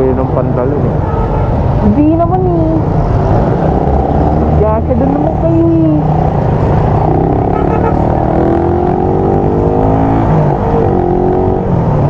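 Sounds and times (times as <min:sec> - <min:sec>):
low wind rumble: 0:00.0 - 0:12.0
motorcycle engine accelerating: 0:03.2 - 0:12.0.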